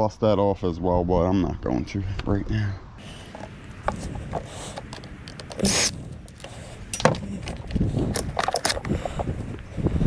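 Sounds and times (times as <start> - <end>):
metal parts clinking: 4.8 - 8.9.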